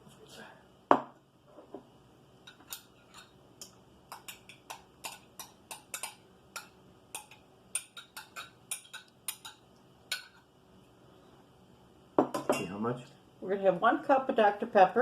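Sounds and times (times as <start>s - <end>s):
kitchen utensils clicking and tapping: 2.4s - 10.5s.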